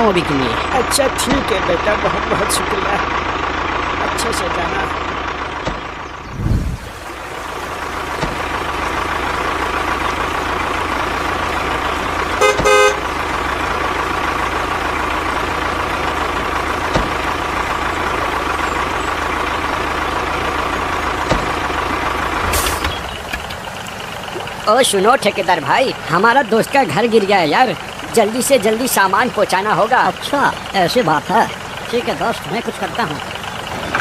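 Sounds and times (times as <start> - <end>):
motor vehicle humming: 0.0 - 34.0
short horn toot: 12.4 - 13.0
low thump: 16.9 - 17.2.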